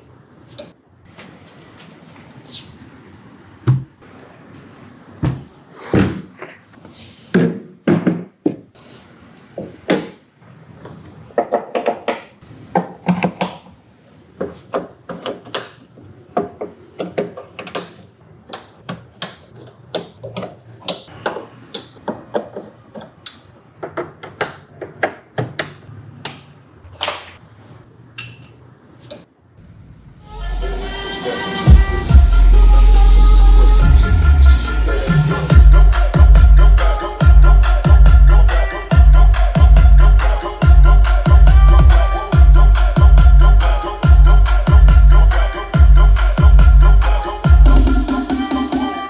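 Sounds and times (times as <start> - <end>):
loud bass-heavy music: 29.8 - 49.0.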